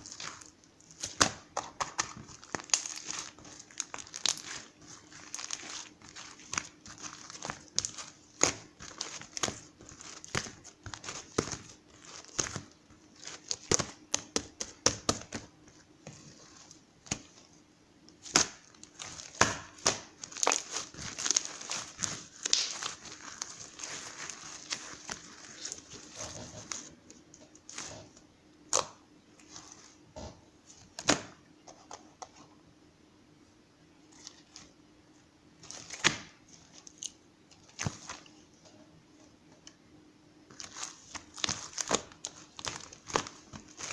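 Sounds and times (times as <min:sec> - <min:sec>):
material crinkling and clicking: 0:00.0 - 0:29.8, 0:40.5 - 0:43.9
faint steady hum: 0:00.0 - 0:43.9.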